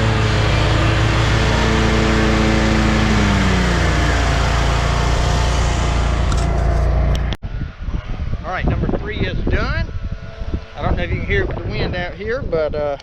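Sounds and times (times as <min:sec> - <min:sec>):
lawn mower engine running: 0:00.0 - 0:07.4.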